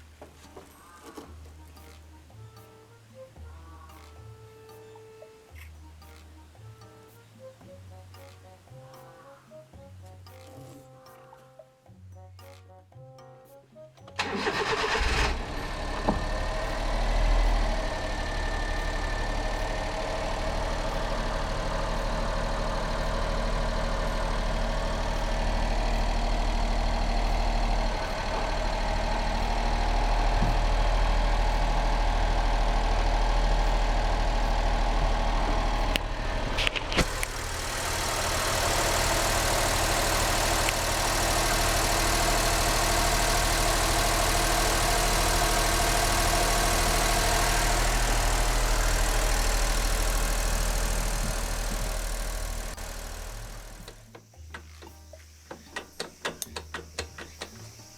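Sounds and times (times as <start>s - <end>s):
car engine idling: 14.2s - 57.7s.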